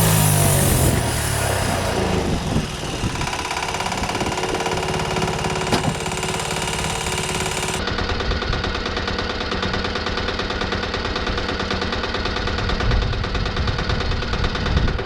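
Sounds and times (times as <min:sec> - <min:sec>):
saw blade hissing: 0:00.0 - 0:07.8
sawmill engine running: 0:00.0 - 0:07.8.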